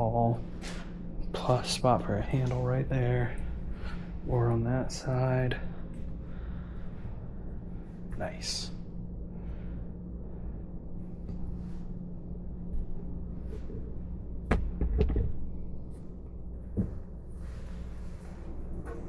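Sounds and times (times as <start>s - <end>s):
low steady hum: 0.0s - 19.0s
sharp knocks: 14.5s - 15.4s.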